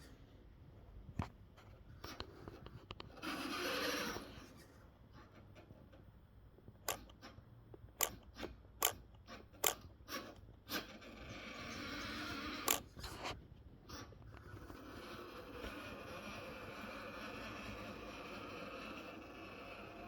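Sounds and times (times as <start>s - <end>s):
electric motor whirring: 12.0s - 12.9s
plastic clicks and crunches: 12.7s - 13.0s.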